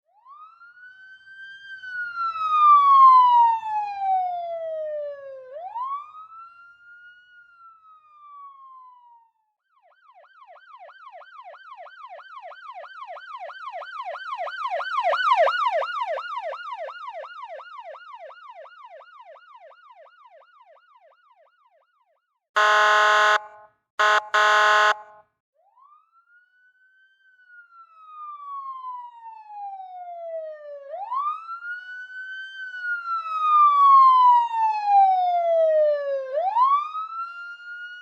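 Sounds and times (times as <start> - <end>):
police siren wailing: 0.1 - 22.0, 22.6 - 38.0
police siren yelping: 22.6 - 25.2.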